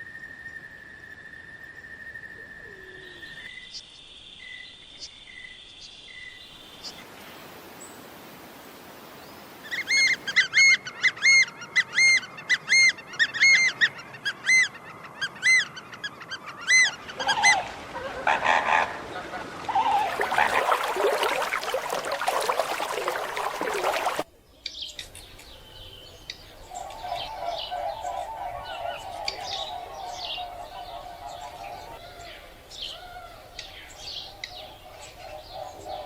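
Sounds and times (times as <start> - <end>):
bird chirping: 20.0 - 36.0.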